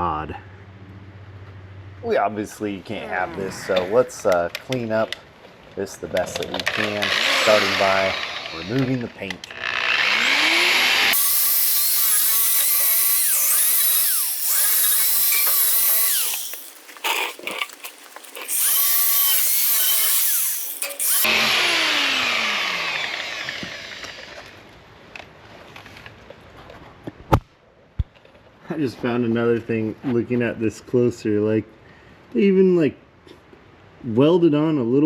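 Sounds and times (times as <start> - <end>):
angle grinder on steel: 6.3 - 24.6.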